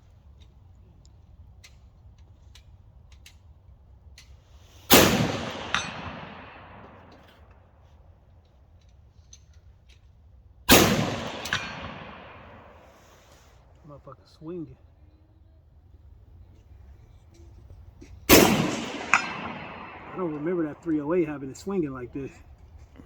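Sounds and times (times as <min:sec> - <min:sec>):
rifle shots ringing out: 0:04.9 - 0:07.4, 0:10.7 - 0:13.3, 0:18.3 - 0:22.3
bullet clanging on steel target: 0:18.4 - 0:21.2.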